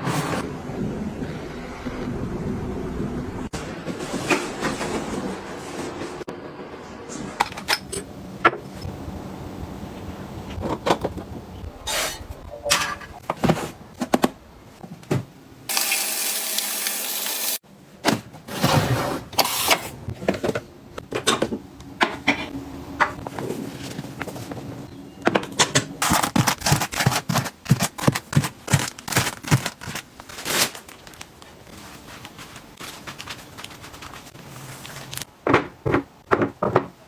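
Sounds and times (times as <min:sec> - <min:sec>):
kitchen items clicking and knocking: 0:25.2 - 0:30.2.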